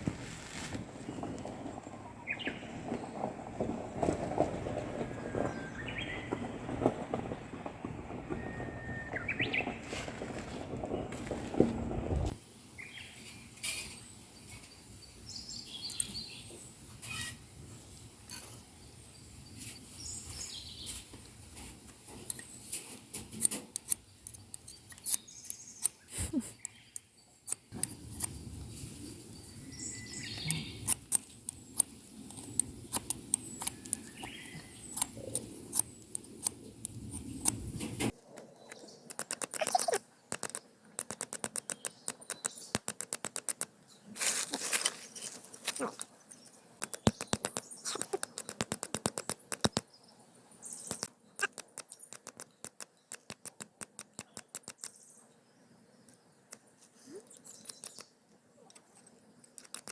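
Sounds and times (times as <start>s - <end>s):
sharp crackles and clicks: 0.0s - 12.4s, 30.2s - 49.9s, 50.6s - 55.1s, 56.0s - 59.9s
small songbirds chirping: 1.0s - 3.4s, 4.8s - 7.7s, 8.3s - 9.8s, 12.8s - 21.2s, 23.4s - 44.2s, 44.8s - 59.9s.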